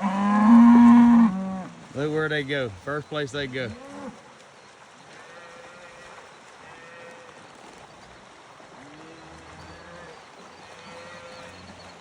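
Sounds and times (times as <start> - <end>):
cattle mooing: 0.0 - 1.7.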